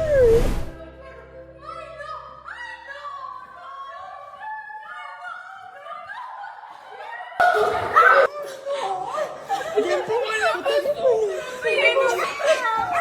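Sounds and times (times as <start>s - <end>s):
quiet background music: 0.0s - 7.4s.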